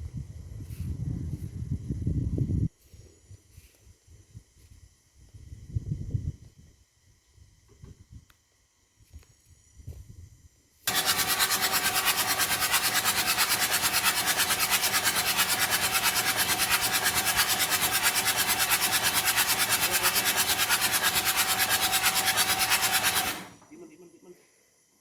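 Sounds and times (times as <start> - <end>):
diesel engine running: 10.9 - 23.6.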